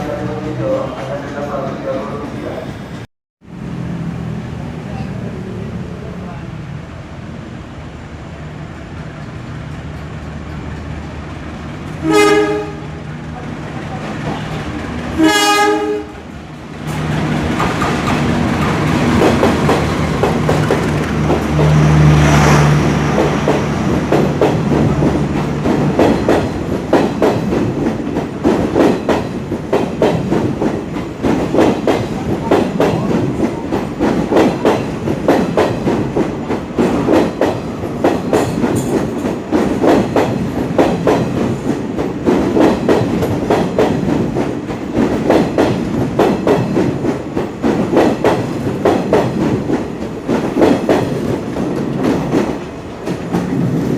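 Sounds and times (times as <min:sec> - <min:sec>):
train engine humming: 0:00.0 - 0:53.9
train wheels clattering over rails: 0:09.0 - 0:53.9
train horn: 0:12.0 - 0:13.0, 0:15.2 - 0:16.2.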